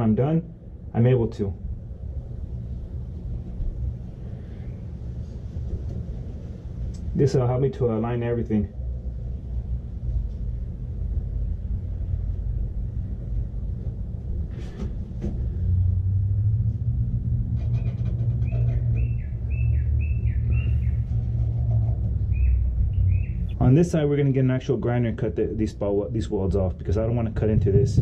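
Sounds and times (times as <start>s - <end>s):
low steady rumble: 0.0s - 28.0s
bird chirping: 18.4s - 21.6s, 22.2s - 23.6s.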